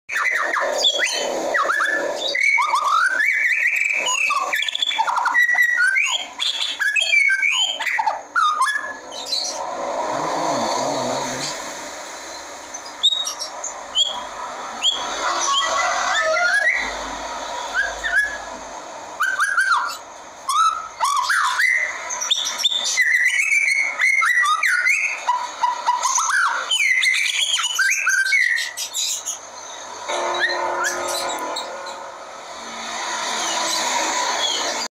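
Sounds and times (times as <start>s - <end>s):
songbird singing whistles: 0.1s - 9.7s, 12.3s - 14.2s, 14.8s - 16.9s, 17.7s - 18.5s, 19.2s - 31.4s
steady background hiss: 9.0s - 15.4s.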